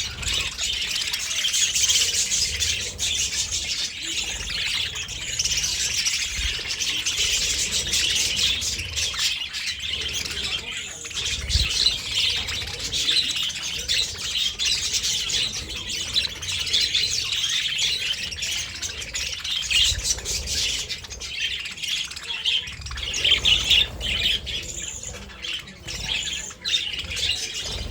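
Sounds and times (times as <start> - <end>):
budgerigars chattering: 0.0 - 27.9.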